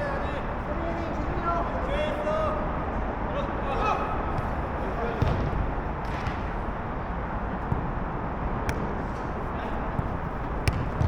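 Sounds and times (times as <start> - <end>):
ball being struck: 5.2 - 6.5, 8.6 - 9.2, 10.0 - 11.0.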